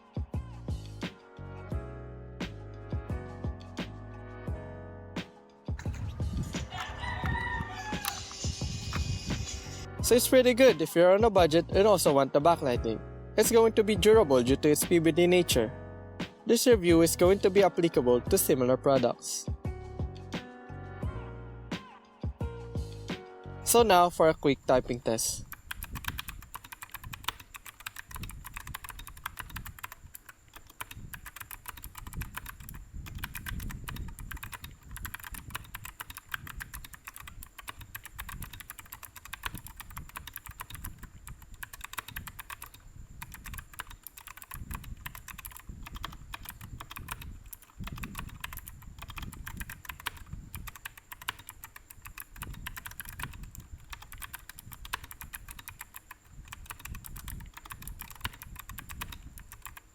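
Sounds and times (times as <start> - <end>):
mechanical keyboard typing: 25.4 - 59.9.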